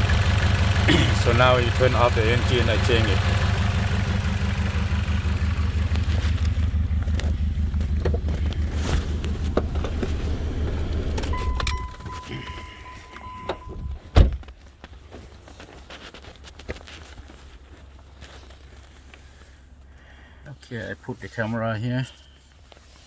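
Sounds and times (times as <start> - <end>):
car engine idling rough: 0.0 - 14.5, 16.8 - 20.5
loud thump: 13.7 - 14.4.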